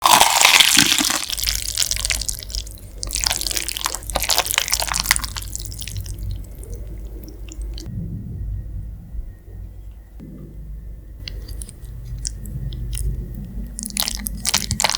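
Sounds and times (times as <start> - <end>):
wet crackly bites and chewing: 0.0 - 7.9, 11.3 - 14.9.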